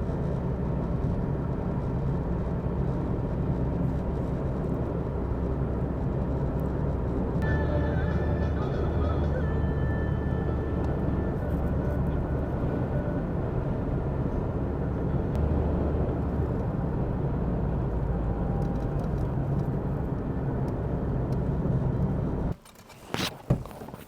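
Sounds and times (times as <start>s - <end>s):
car engine and road noise: 0.0s - 24.0s.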